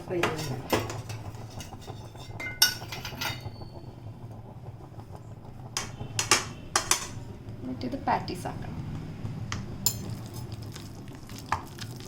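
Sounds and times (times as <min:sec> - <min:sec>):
metal utensils clinking on pans: 0:00.2 - 0:03.5, 0:05.8 - 0:07.2, 0:09.8 - 0:10.5.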